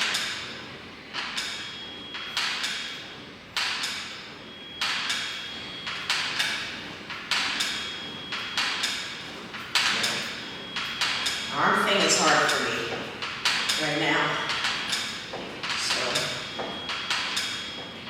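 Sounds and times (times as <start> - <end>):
elliptical trainer knocking: 4.8 - 18.0.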